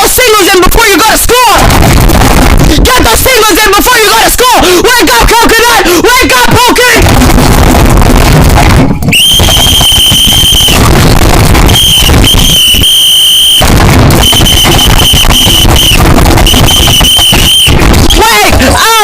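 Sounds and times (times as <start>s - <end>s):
distorted crackling noise: 0.0s - 19.0s
high-pitched whistle tone: 9.1s - 10.8s, 11.7s - 17.8s.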